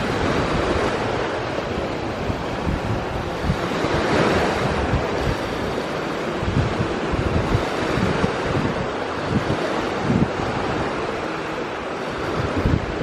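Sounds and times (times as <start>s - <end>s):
sea waves washing in: 0.0s - 13.0s
wind buffeting microphone: 0.0s - 13.0s.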